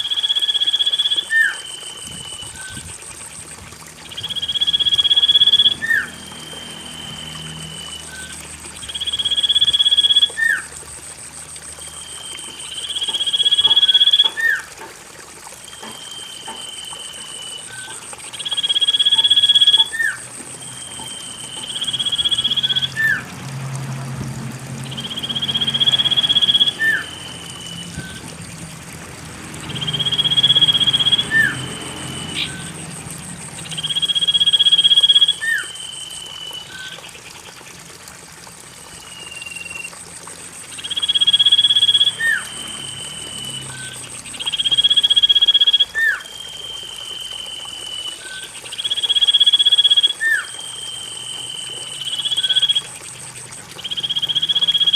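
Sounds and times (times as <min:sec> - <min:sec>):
bird whistling call: 0:00.1 - 0:02.8, 0:04.0 - 0:10.7, 0:15.7 - 0:20.2, 0:20.8 - 0:23.2, 0:24.8 - 0:28.2, 0:29.7 - 0:32.8, 0:33.7 - 0:37.1, 0:39.0 - 0:39.9, 0:40.7 - 0:52.8.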